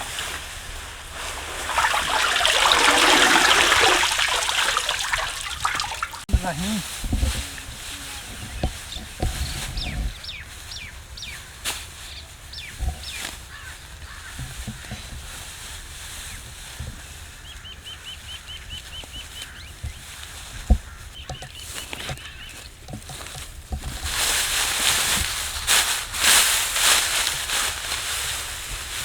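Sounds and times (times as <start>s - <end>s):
low rustling and thuds: 0.0s - 17.6s, 19.0s - 29.0s
birds whistling: 7.5s - 14.3s.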